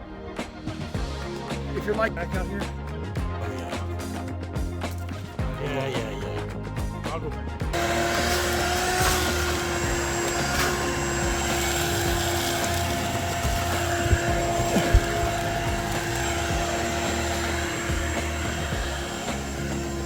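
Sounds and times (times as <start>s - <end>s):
motor drone with high whine: 7.7s - 20.0s.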